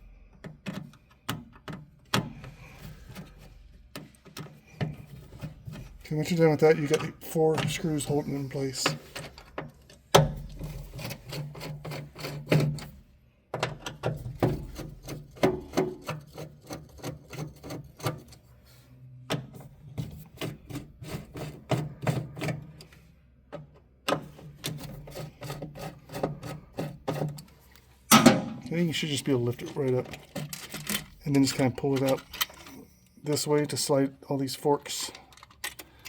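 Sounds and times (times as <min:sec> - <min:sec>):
screwdriver clicking and scraping screws: 0:08.9 - 0:13.0, 0:29.4 - 0:33.7, 0:35.1 - 0:36.0.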